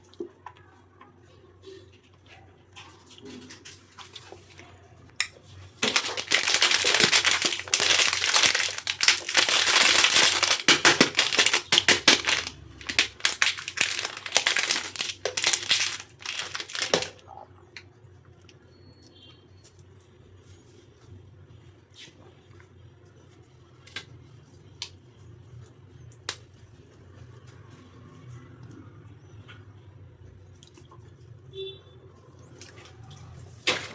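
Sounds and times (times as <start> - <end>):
plastic wrapper crinkling: 5.8 - 17.4.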